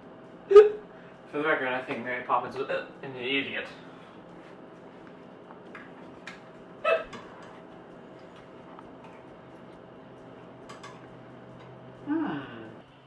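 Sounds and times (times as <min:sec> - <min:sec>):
person hiccuping: 0:00.5 - 0:00.9, 0:06.8 - 0:07.4.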